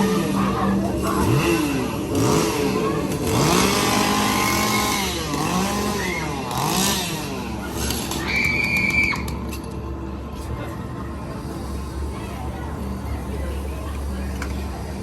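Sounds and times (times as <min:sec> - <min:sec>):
chainsaw engines revving: 0:00.0 - 0:09.3.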